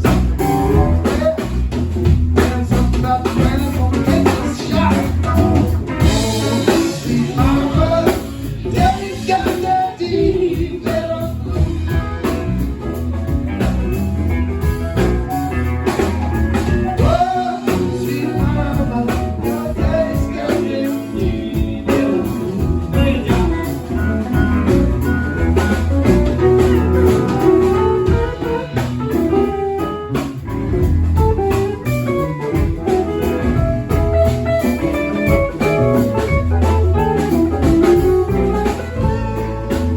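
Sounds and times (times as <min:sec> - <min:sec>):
bass guitar: 0:00.0 - 0:39.9
drum kit: 0:00.0 - 0:39.9
electric guitar: 0:00.0 - 0:39.9
person singing: 0:02.4 - 0:12.3, 0:17.0 - 0:24.5.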